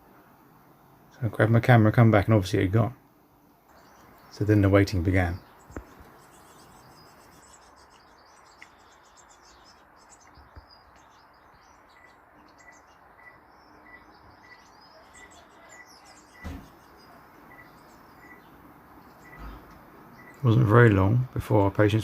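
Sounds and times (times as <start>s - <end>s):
small birds chirping faintly: 0.0s - 22.0s
dull thump: 16.4s - 16.8s.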